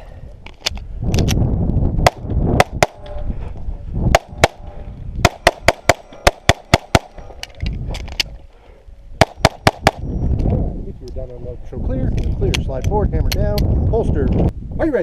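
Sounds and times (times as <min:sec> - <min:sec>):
pistol shots: 0:04.1 - 0:04.6, 0:05.2 - 0:07.2, 0:09.2 - 0:10.0.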